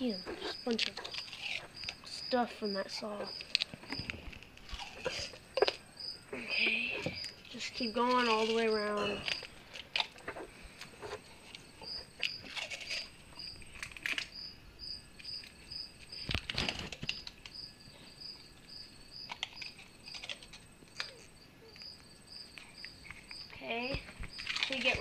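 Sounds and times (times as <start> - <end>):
cricket chirping: 0.0 - 25.0
duct tape ripping: 16.2 - 17.6.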